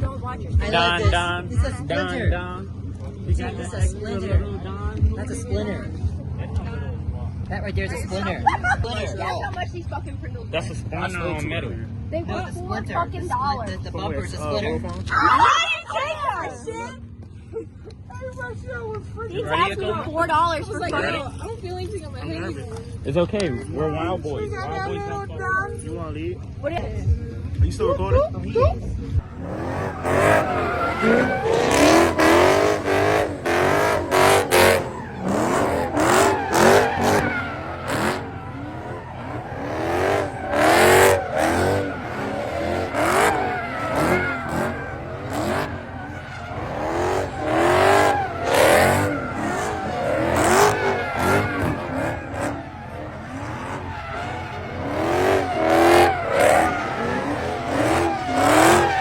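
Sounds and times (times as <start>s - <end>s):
car engine revving: 29.1s - 59.0s
tire squeal: 29.2s - 59.0s.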